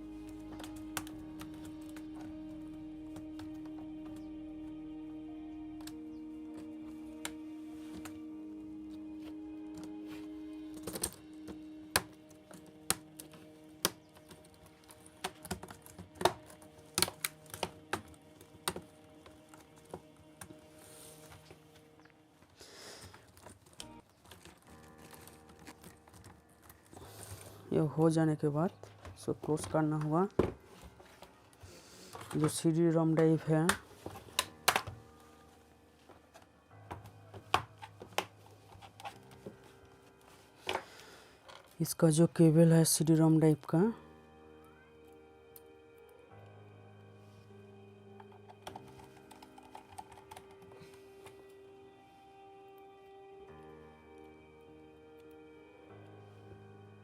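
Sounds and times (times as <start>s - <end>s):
faint background music: 0.0s - 57.0s
laptop parts clicking and knocking: 10.7s - 21.6s, 23.0s - 27.4s, 32.1s - 35.1s, 36.3s - 39.7s, 48.2s - 51.4s.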